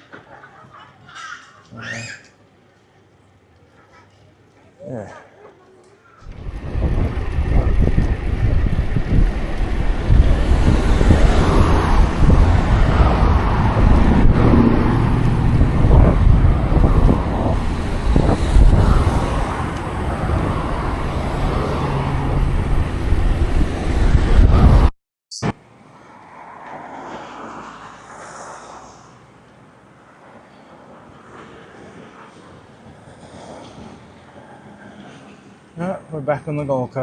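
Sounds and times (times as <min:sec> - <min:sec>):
low rumble: 0:06.2 - 0:24.9
wind buffeting microphone: 0:06.2 - 0:24.9.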